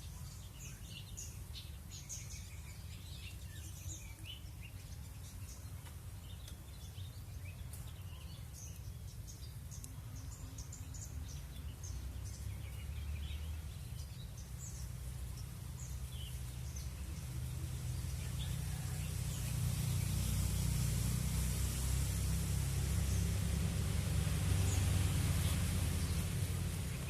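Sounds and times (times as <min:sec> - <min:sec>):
small birds chirping: 0:00.0 - 0:27.0
steady low rumble: 0:08.6 - 0:27.0.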